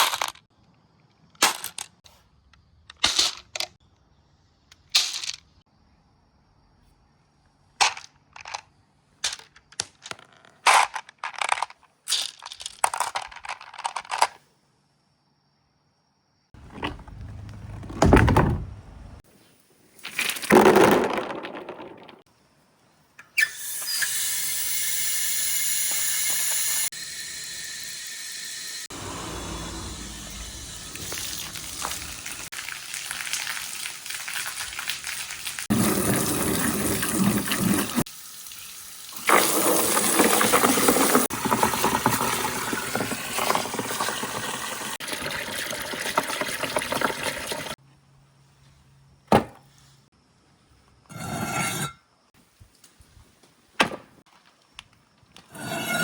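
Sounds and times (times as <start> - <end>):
glass marbles rolling and clattering: 20.0 - 22.2, 24.0 - 28.0, 30.7 - 38.1, 39.2 - 47.8.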